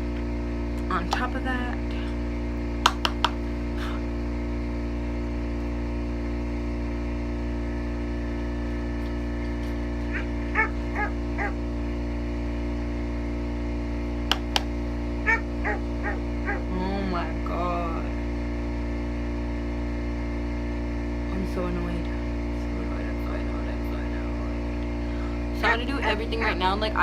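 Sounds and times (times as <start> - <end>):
steady low hum: 0.0 - 27.0
sharp clicks: 2.8 - 3.4, 14.3 - 14.7
small dog yipping: 10.1 - 11.6, 15.3 - 16.6.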